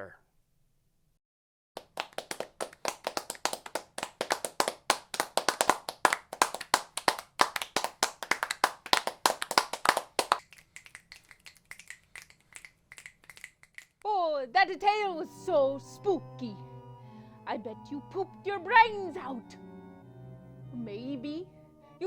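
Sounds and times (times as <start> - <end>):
people clapping: 1.8 - 14.0.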